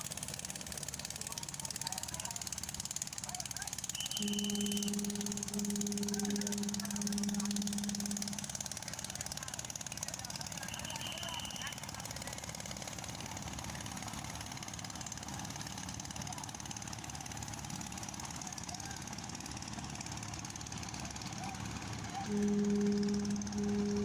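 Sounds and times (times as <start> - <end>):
boat engine running: 0.0 - 24.0
loud low horn: 4.0 - 8.6, 22.3 - 24.0.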